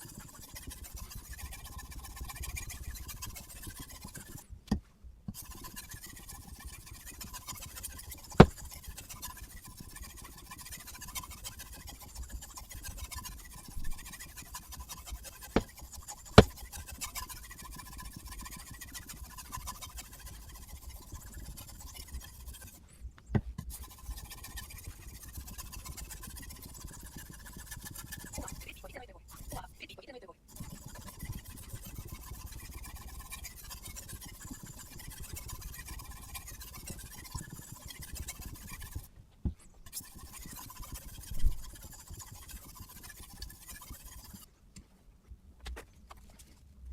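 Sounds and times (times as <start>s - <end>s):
sharpening stone scraping knife blade: 5.4s - 19.4s.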